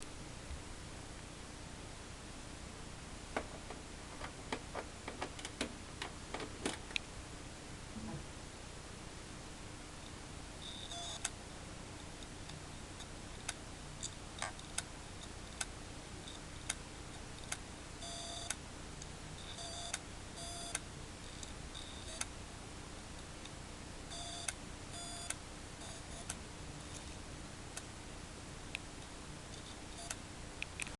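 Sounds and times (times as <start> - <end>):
faint steady hum: 0.0 - 30.9
hard drive clicking: 3.4 - 7.1.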